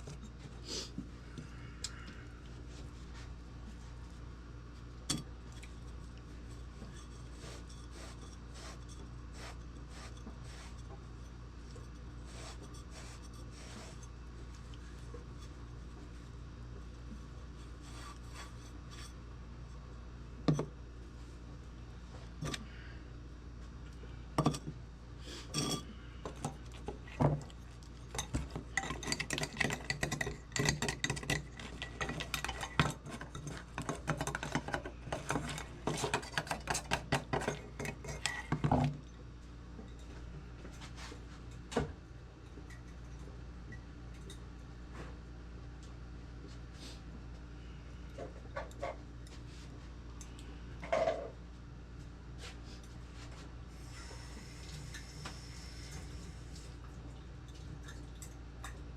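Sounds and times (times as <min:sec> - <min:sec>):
tool scraping inside lantern: 0:06.8 - 0:10.9, 0:12.2 - 0:14.2, 0:28.2 - 0:38.6.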